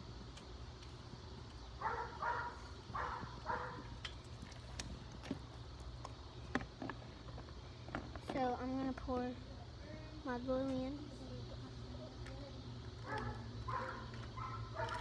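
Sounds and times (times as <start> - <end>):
dog barking: 1.8 - 3.8, 13.0 - 15.0.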